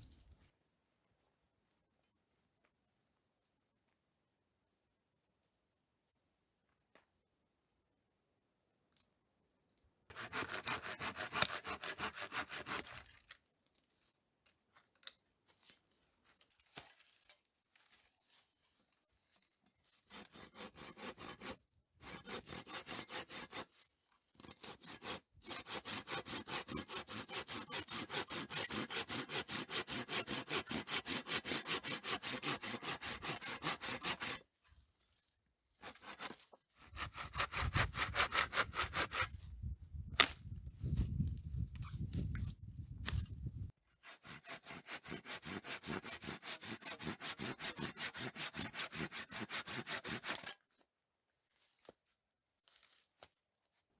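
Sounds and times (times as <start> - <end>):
hand saw cutting wood: 10.1 - 13.2, 20.1 - 23.8, 24.4 - 34.4, 35.8 - 39.4, 43.9 - 50.6.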